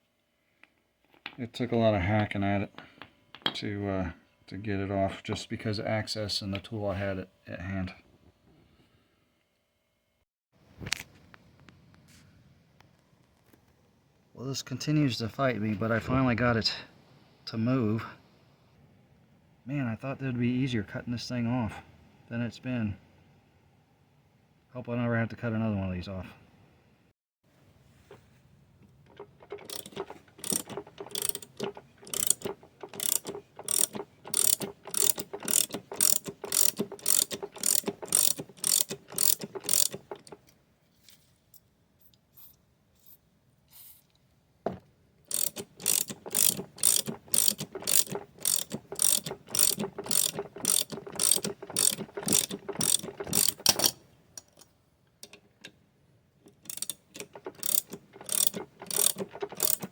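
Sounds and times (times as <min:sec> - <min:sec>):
hacksaw cutting metal: 0:29.2 - 0:40.4, 0:45.3 - 0:54.0, 0:56.7 - 0:59.9.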